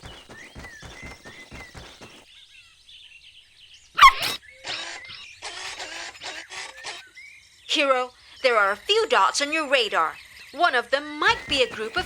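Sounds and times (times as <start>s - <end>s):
small bird chirps: 0.0s - 10.6s, 11.2s - 12.0s
puppy yelp: 4.0s - 4.4s.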